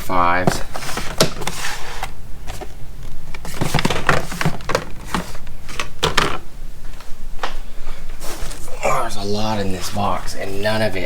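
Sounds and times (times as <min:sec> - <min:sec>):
items knocking and clattering: 0:03.4 - 0:06.5.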